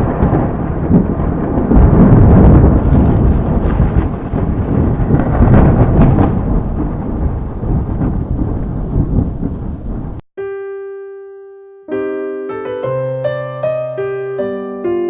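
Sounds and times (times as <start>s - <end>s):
faint crackles: 0.0s - 10.2s
thunder rumbling: 0.0s - 10.2s.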